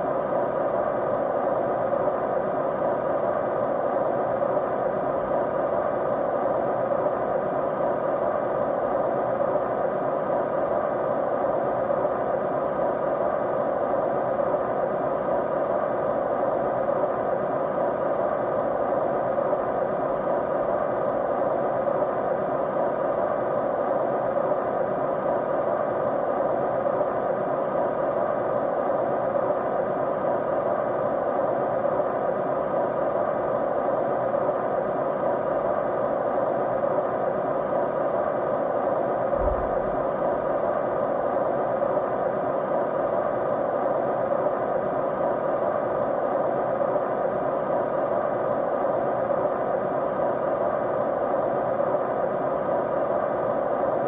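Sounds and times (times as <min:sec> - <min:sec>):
faint steady tones: 0:00.0 - 0:54.0
steady white noise: 0:00.0 - 0:54.0.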